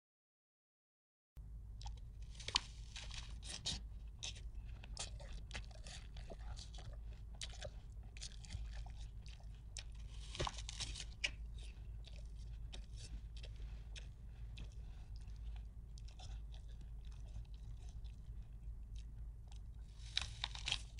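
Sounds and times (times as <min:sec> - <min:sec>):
steady low hum: 0:01.4 - 0:20.9
dense crunching and crackling: 0:02.2 - 0:08.8, 0:09.8 - 0:11.8, 0:19.9 - 0:20.9.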